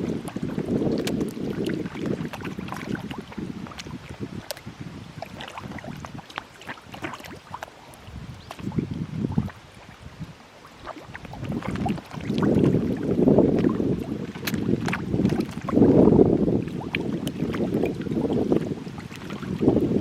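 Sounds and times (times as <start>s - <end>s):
fish splashing and slurping: 0.0s - 20.0s.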